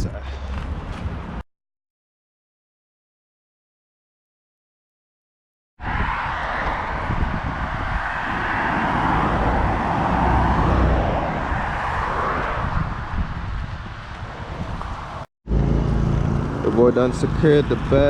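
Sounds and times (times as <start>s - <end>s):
road and wind noise: 0.0s - 1.4s, 5.8s - 18.0s.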